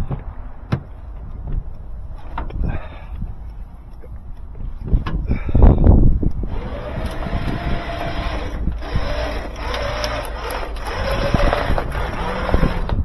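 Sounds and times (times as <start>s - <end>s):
loud rumbling burst: 0.0s - 3.9s, 5.6s - 13.0s
wind noise on microphone: 0.0s - 13.0s
motor vehicle running: 6.1s - 13.0s.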